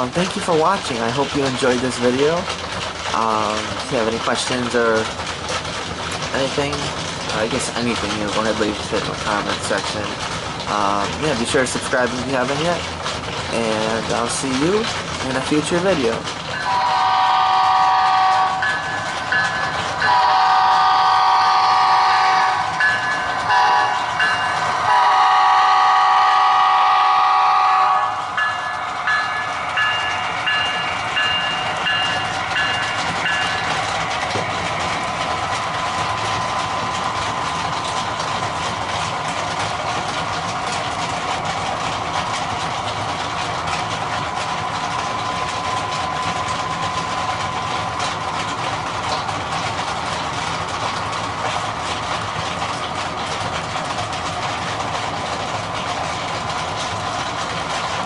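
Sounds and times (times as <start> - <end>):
model train rumbling on track: 0.0 - 58.0.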